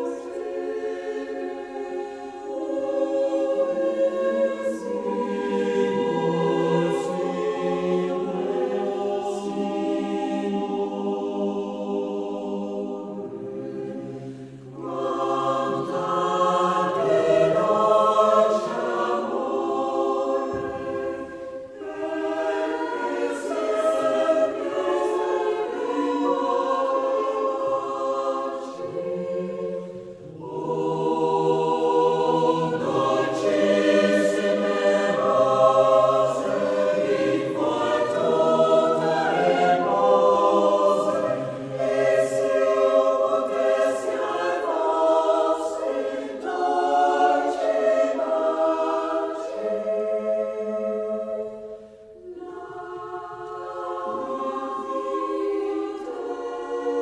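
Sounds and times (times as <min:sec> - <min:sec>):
choir singing unaccompanied: 0:00.0 - 0:57.0
singers breathing: 0:14.1 - 0:14.8.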